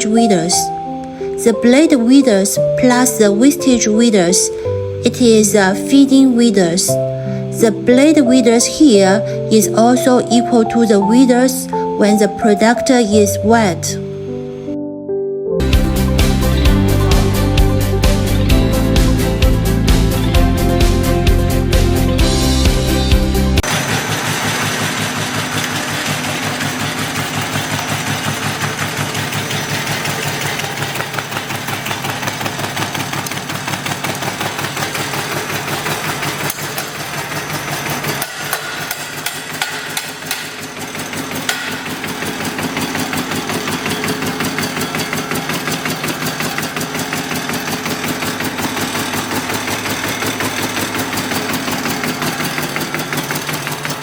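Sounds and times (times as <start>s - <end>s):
punching machine stamping wood: 23.6s - 54.0s.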